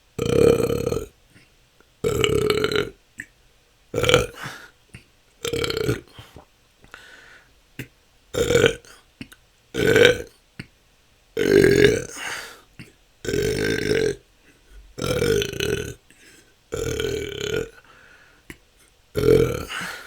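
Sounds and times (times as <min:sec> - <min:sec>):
person burping: 0:00.2 - 0:01.1, 0:02.0 - 0:03.3, 0:04.0 - 0:04.6, 0:05.4 - 0:06.4, 0:07.8 - 0:08.9, 0:09.8 - 0:10.3, 0:11.4 - 0:14.2, 0:15.0 - 0:16.0, 0:16.7 - 0:17.8, 0:19.2 - 0:20.0.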